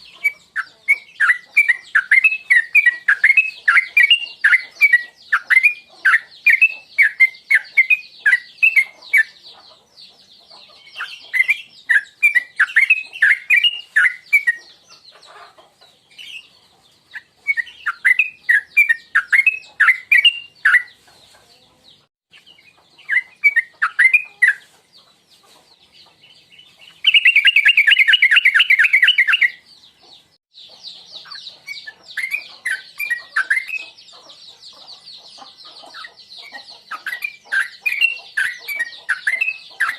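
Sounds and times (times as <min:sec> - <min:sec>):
rapid chattering bird trill: 0:00.0 - 0:21.0, 0:26.0 - 0:39.9
bird singing bubbling chirps: 0:26.9 - 0:29.7.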